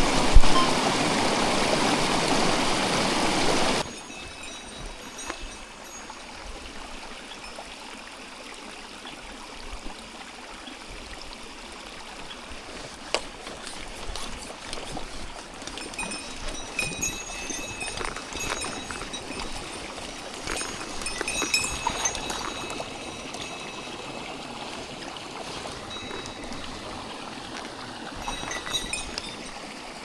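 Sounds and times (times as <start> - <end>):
stream running over rocks: 0.0 - 30.0
small clicks and rustles: 12.7 - 23.9.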